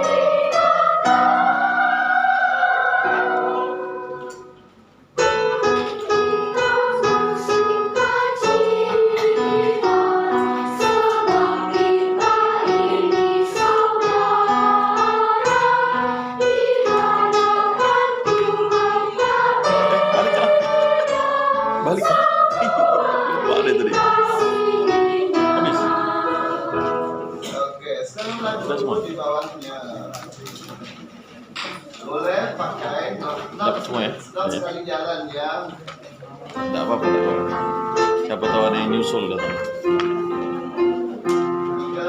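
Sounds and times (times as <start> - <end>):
plucked musical accompaniment: 0.0 - 27.5, 36.5 - 42.0
person singing: 19.3 - 24.2.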